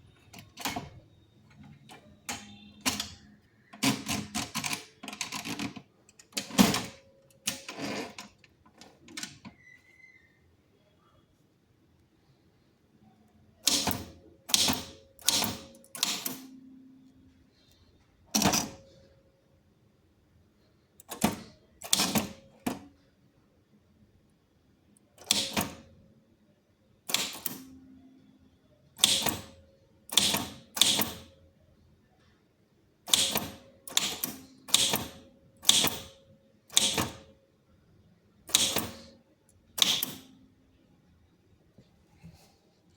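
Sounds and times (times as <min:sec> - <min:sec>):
typewriter key clacks: 0:13.6 - 0:16.5, 0:21.0 - 0:22.8, 0:25.2 - 0:25.8, 0:27.1 - 0:27.6, 0:29.0 - 0:31.3, 0:33.1 - 0:37.2, 0:38.5 - 0:39.1, 0:39.8 - 0:40.3.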